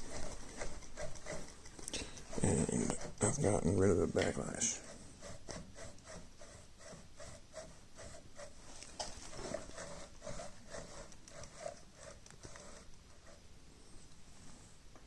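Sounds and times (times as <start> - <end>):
dog panting: 0.0 - 3.6.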